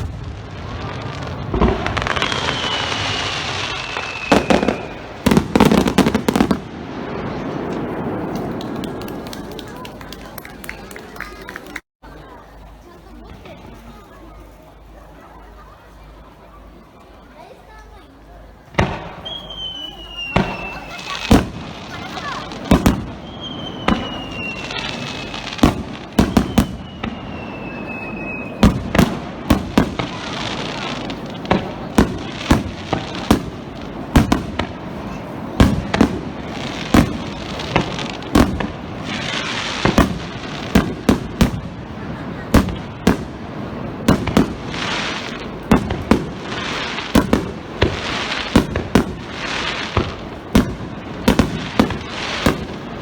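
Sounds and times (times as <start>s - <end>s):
fireworks booming: 0.0s - 10.5s, 18.5s - 53.0s
falling firework whistle: 1.5s - 6.6s, 19.0s - 31.3s.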